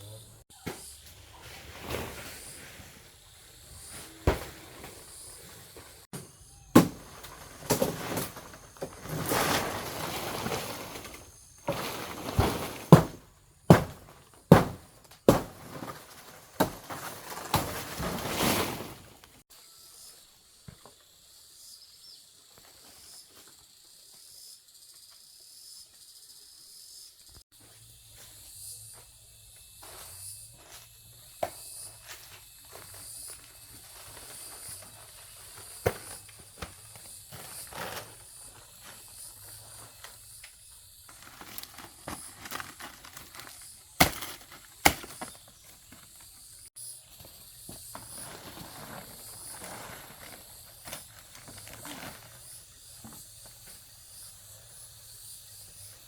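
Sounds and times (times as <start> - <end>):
rustling leaves: 1.0 - 13.4, 14.7 - 19.4, 41.0 - 46.3
sharp chopping strikes: 6.7 - 7.1, 12.9 - 15.6, 44.0 - 45.2
high insect chirring: 19.6 - 56.0.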